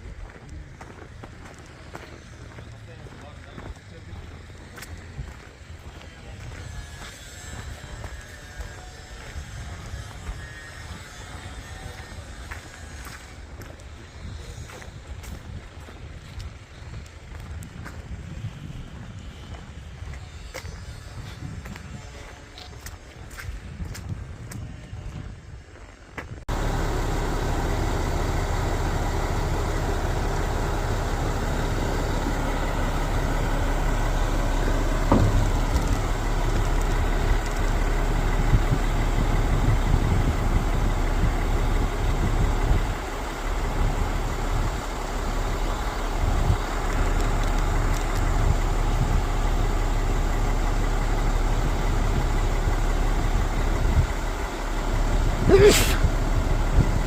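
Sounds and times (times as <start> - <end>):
diesel engine running: 0.0 - 57.0
engine knocks: 26.4 - 57.0.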